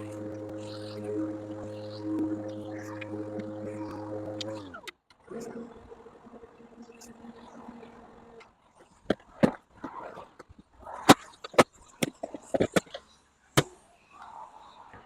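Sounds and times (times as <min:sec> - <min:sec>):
lawn mower motor hum: 0:00.0 - 0:06.0.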